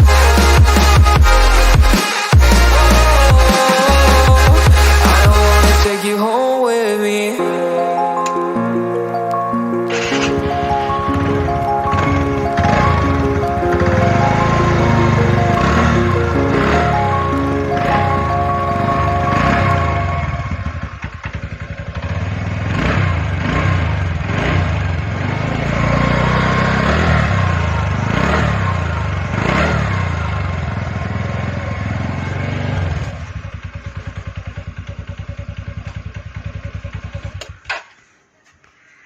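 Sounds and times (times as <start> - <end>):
scooter engine revving and idling: 9.9 - 37.7.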